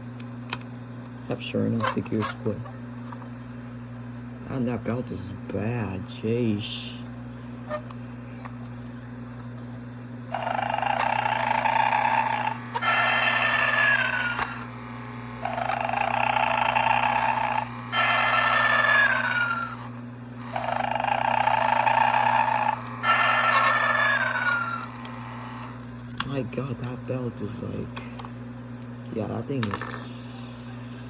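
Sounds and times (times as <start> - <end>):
toy recorded snore: 10.3 - 25.8.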